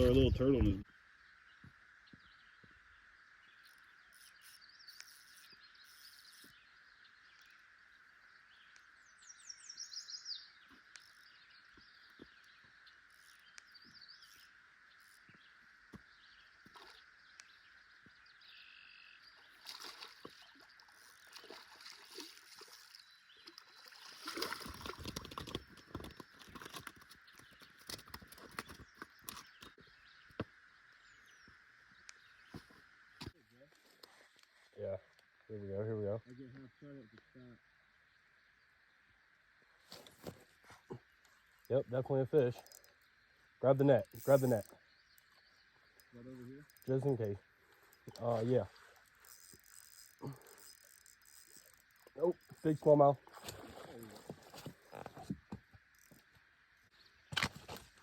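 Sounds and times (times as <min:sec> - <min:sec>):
bird chirp: 0:00.0 - 0:33.7.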